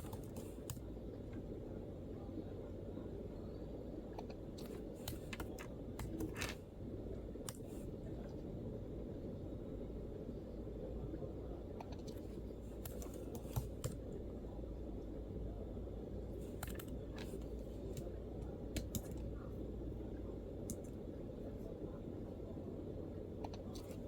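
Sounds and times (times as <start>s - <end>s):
keyboard typing: 0.0s - 0.8s, 4.2s - 6.6s, 12.0s - 14.1s, 16.4s - 19.3s
low background hum: 0.0s - 24.0s.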